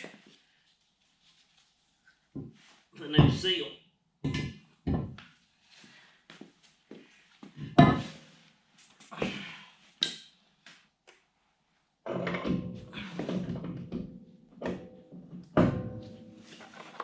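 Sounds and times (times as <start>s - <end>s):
heavy metal knocks and clunks: 12.2s - 16.4s.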